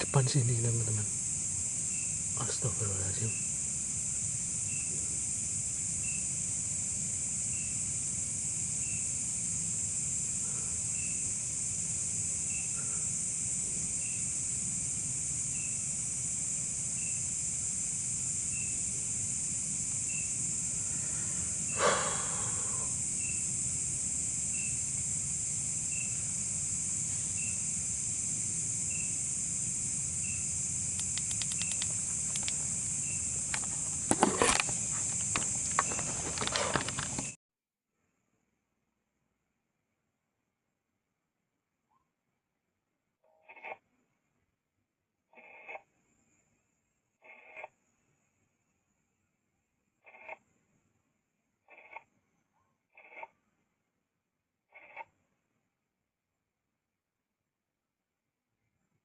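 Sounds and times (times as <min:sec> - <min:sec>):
night insects chorus: 0:00.0 - 0:37.4
short insect chirp: 0:00.0 - 0:37.4.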